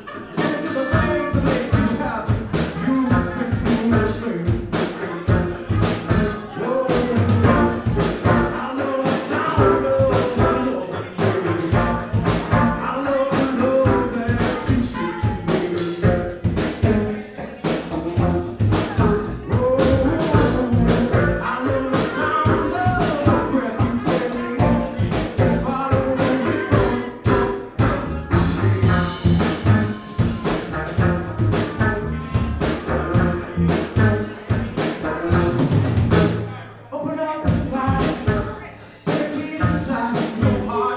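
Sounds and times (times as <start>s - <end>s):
drum kit beat: 0.0s - 36.6s, 37.4s - 40.9s
live band playing: 0.0s - 36.6s, 37.4s - 40.9s.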